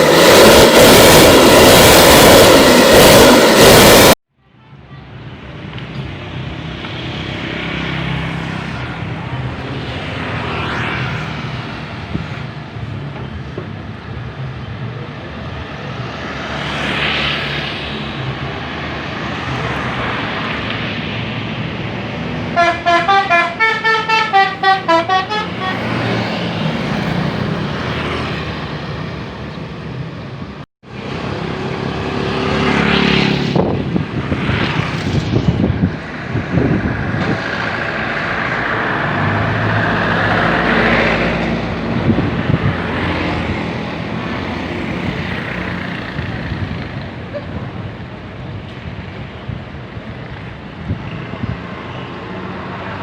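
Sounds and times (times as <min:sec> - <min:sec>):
bus engines and traffic: 0:00.0 - 0:53.0
vehicles passing: 0:00.0 - 0:53.0
bus horn playing tune: 0:22.6 - 0:26.2.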